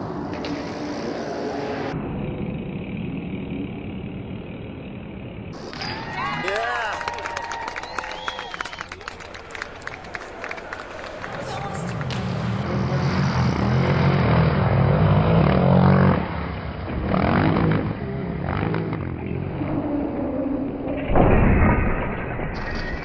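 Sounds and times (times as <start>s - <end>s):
low rumble: 0.0s - 6.4s, 7.1s - 23.0s
loud boom-like hit: 21.0s - 22.9s.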